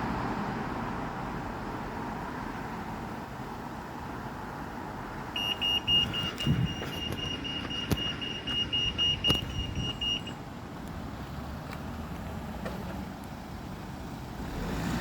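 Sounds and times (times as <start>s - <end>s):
road traffic rumble: 0.0s - 15.0s
pedestrian crossing signal beeping: 5.3s - 10.4s.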